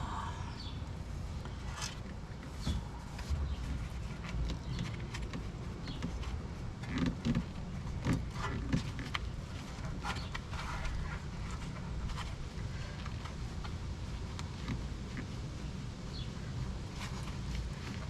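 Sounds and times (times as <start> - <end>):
low rumble: 0.0 - 1.7.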